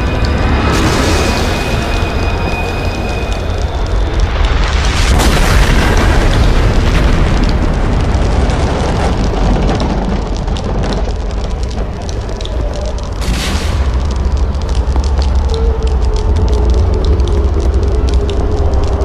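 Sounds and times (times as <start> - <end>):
music: 0.0 - 6.9, 11.1 - 19.0
crackles: 0.0 - 19.0
rumbling explosion booms: 0.0 - 19.0.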